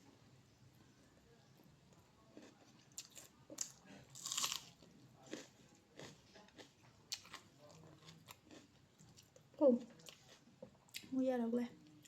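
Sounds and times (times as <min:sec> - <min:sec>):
person chewing crunchy food: 0:02.4 - 0:09.4, 0:10.0 - 0:11.1.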